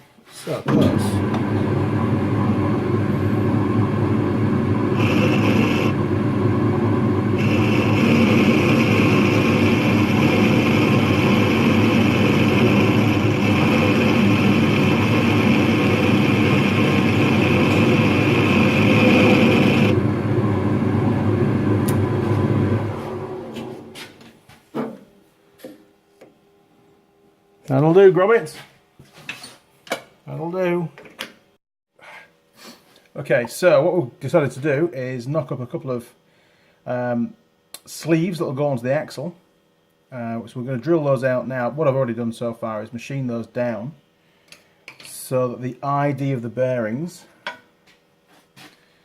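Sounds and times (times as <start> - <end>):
hissing whine: 0.6 - 24.0
electric motor running: 0.9 - 23.7.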